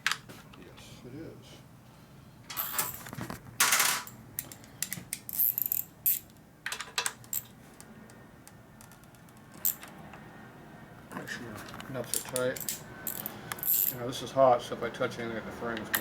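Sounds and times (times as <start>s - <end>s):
metal tools clinking: 2.5s - 3.0s, 12.1s - 14.0s
ratchet rattle: 5.3s - 6.2s, 12.6s - 14.0s.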